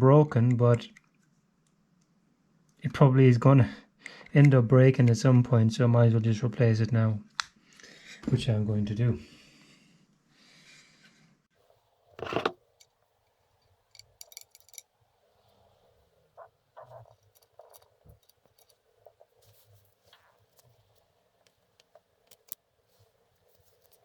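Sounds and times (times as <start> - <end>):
metal parts clicking and clattering: 12.2 - 12.6, 13.9 - 14.9.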